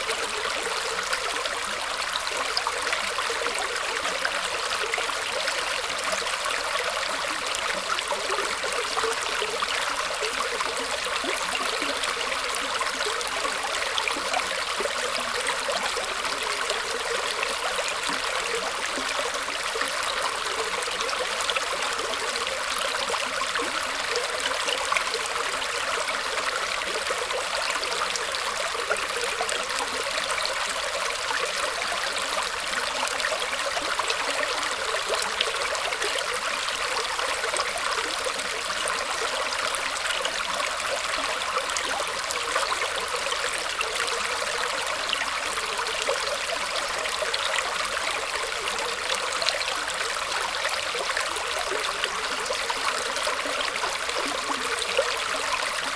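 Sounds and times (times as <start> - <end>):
water trickling through roots: 0.0 - 55.9.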